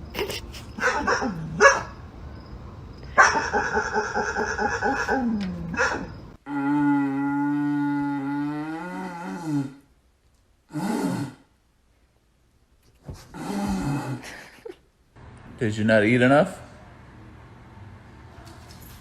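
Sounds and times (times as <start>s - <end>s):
pet animal calling: 3.2s - 6.1s.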